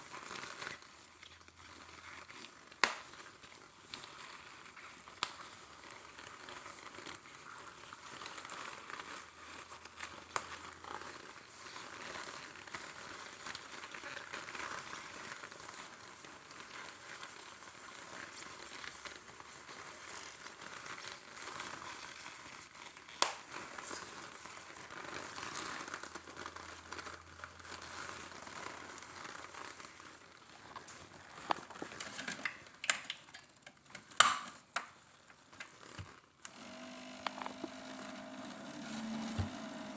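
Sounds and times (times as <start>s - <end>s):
sharp pops: 2.8s - 3.0s, 34.2s - 34.9s
coffee maker hissing and sputtering: 36.0s - 39.9s.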